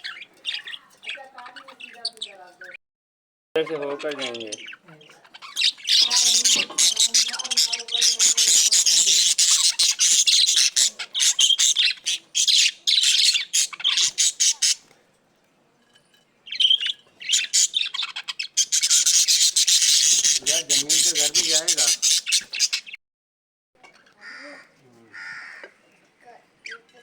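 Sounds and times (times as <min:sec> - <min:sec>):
budgerigars chattering: 0:00.0 - 0:02.5, 0:03.6 - 0:14.9, 0:16.5 - 0:23.0.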